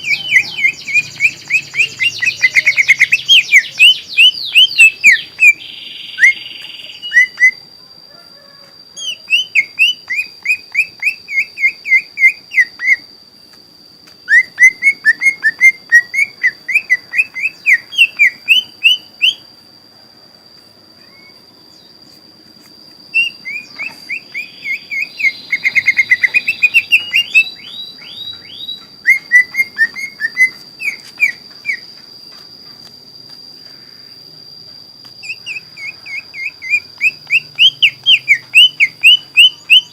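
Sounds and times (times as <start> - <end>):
bird singing whistled notes: 0.0 - 7.7, 9.0 - 13.1, 14.2 - 19.5, 21.0 - 22.0, 23.1 - 31.8, 35.2 - 39.9.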